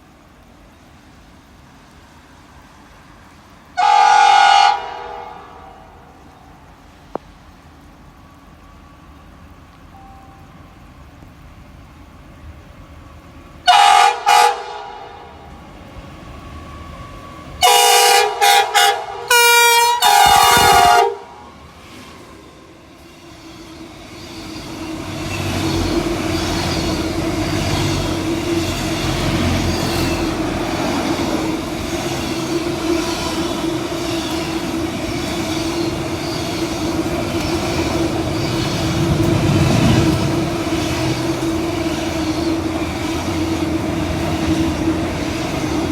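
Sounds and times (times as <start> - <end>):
train passing: 0.0 - 45.9
train horn blasts: 3.8 - 6.4, 13.6 - 15.6, 17.5 - 21.6.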